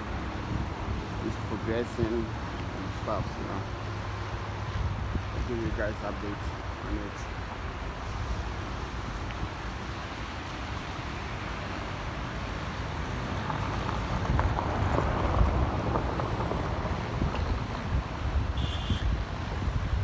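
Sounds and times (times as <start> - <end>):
wind rumble on microphone: 0.0 - 2.3, 4.3 - 20.0
motor vehicle passing: 12.6 - 17.7.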